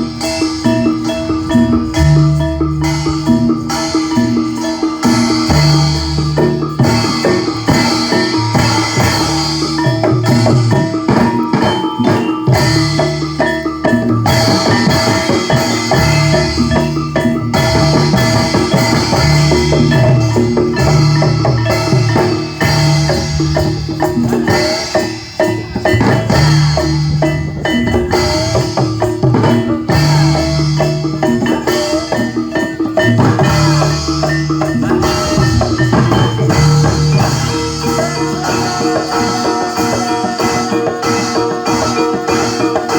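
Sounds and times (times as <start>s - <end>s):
hand drum strokes: 0.0s - 42.9s
metal mallet instruments ringing: 0.0s - 42.9s.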